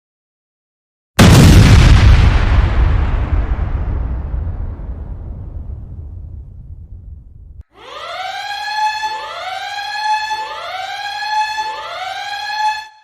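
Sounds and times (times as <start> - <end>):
explosion rumble: 1.2 - 7.6
siren rising sweeps: 7.6 - 13.0.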